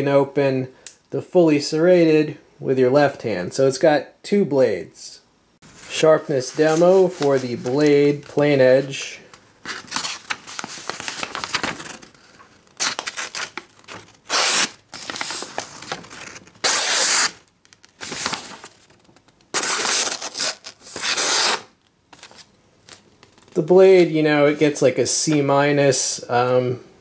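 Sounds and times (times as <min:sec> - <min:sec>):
blade slicing paper: 0:12.8 - 0:17.4, 0:19.5 - 0:21.7.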